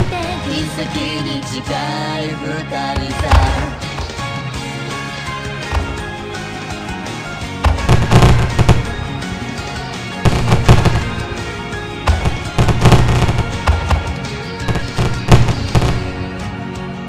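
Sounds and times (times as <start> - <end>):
pop backing track: 0.0 - 17.0
fireworks shell bursts with crackle: 5.6 - 6.8, 7.4 - 16.3.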